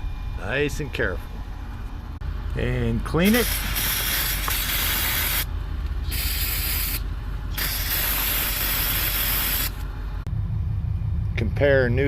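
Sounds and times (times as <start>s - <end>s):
low steady rumble: 0.0s - 12.0s
compressed air gun hissing: 3.2s - 9.9s.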